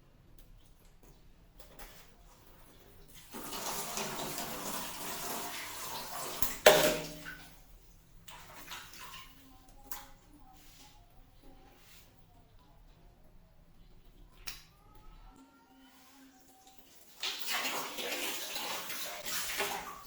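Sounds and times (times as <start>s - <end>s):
water running: 0.6s - 14.7s, 15.3s - 20.0s
faint drips: 6.4s - 20.0s.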